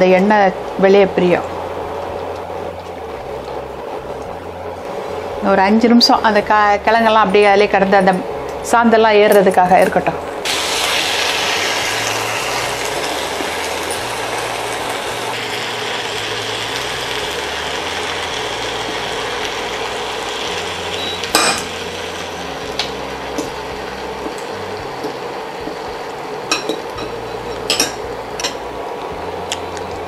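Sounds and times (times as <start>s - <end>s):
food sizzling in a frying pan: 10.4s - 28.7s.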